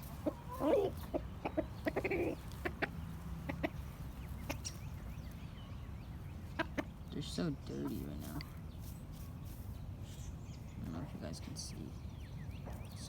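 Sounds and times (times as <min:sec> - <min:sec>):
hens clucking: 0:00.0 - 0:09.8.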